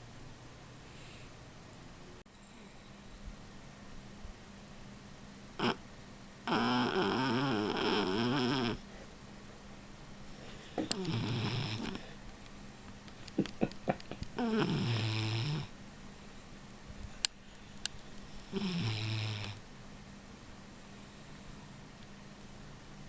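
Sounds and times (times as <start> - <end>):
dog snoring: 5.6 - 5.8, 6.4 - 9.0, 10.3 - 12.2, 14.3 - 15.7, 17.5 - 19.6.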